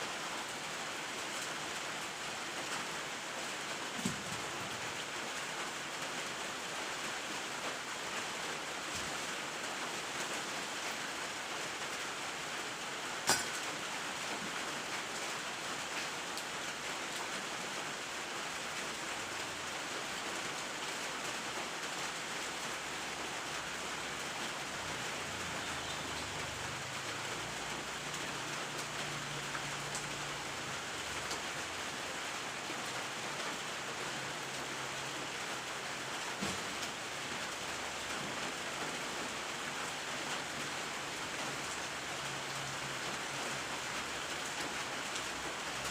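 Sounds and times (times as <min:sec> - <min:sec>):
rain falling: 0:00.0 - 0:45.9.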